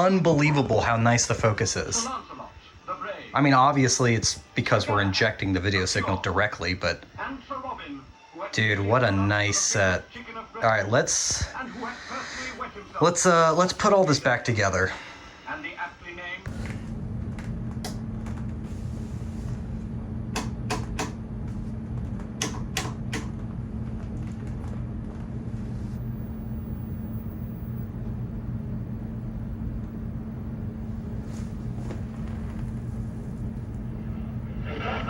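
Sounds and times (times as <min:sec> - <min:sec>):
low hum: 0:16.5 - 0:35.0.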